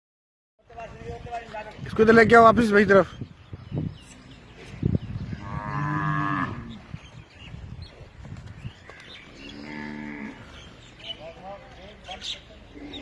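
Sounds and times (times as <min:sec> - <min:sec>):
cattle mooing: 0:05.3 - 0:06.8, 0:09.4 - 0:10.6.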